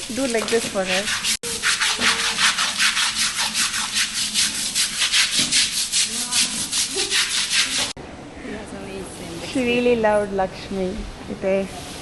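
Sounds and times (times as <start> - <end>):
rhythmic scrubbing strokes: 0.2 - 8.0.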